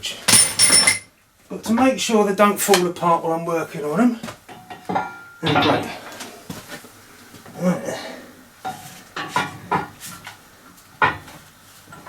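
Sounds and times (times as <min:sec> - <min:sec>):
steel parts knocking and clinking: 0:00.3 - 0:01.1.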